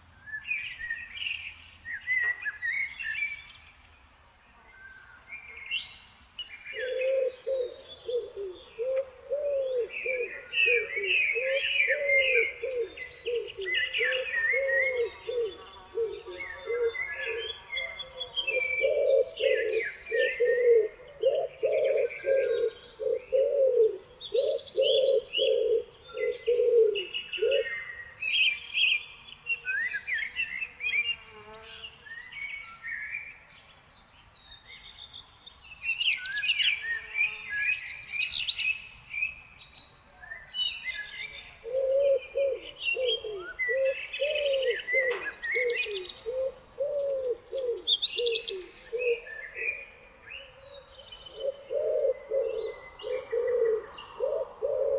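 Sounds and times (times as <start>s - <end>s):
songbirds chirping and warbling: 0.0s - 54.9s
low cooing bird: 6.6s - 28.6s, 40.9s - 54.9s.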